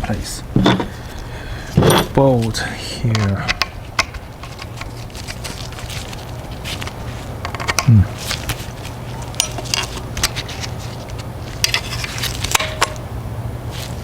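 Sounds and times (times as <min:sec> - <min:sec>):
steady low hum: 0:00.0 - 0:14.0
plastic parts clicking and tapping: 0:06.8 - 0:08.6, 0:09.2 - 0:13.1.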